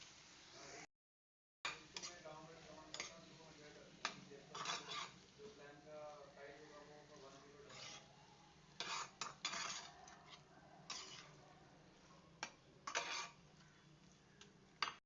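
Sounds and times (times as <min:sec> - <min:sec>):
utensil scraping cookware: 0:01.7 - 0:02.2, 0:02.9 - 0:03.3, 0:04.0 - 0:05.2, 0:07.3 - 0:08.2, 0:08.8 - 0:11.4, 0:12.4 - 0:13.4.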